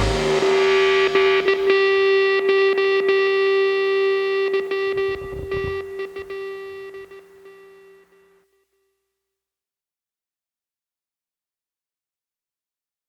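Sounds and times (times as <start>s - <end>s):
distorted electric guitar note: 0.0s - 8.0s.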